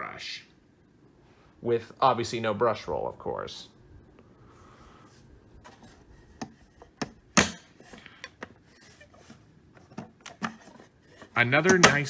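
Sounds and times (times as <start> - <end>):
plastic parts clicking and knocking: 6.4 - 12.0.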